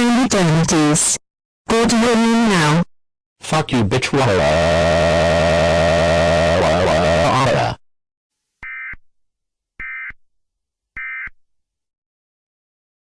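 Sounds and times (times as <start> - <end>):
loud dense sound: 4.1 - 7.8.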